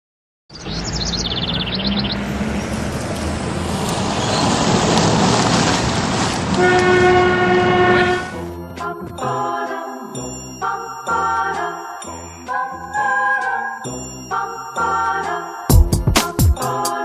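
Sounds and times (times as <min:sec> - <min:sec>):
train rushing past: 0:00.9 - 0:08.4
train horn blast: 0:06.5 - 0:08.5.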